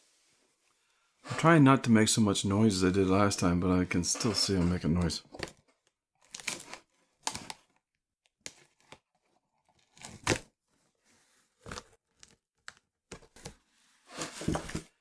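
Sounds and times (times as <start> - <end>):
packaging tearing and crinkling: 6.2 - 7.6, 9.8 - 10.4.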